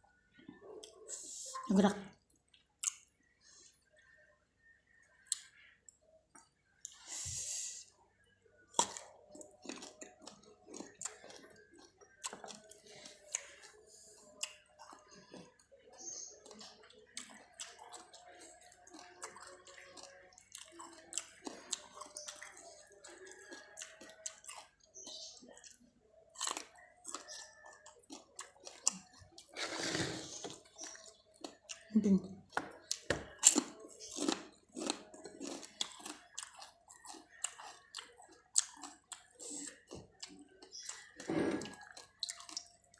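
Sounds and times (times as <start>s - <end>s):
wet chewing and sucking: 8.7s - 42.9s.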